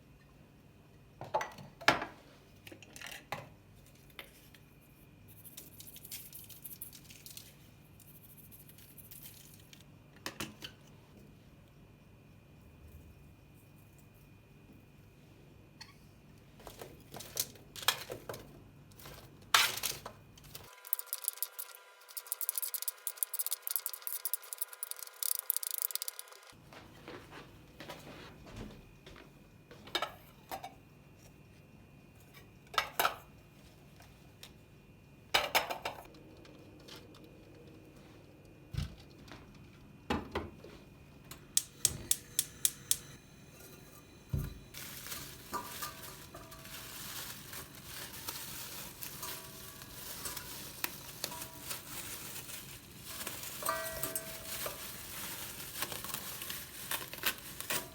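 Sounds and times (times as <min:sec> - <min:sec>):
dishes and utensils clinking: 0:42.9 - 0:51.9, 0:53.1 - 0:55.1.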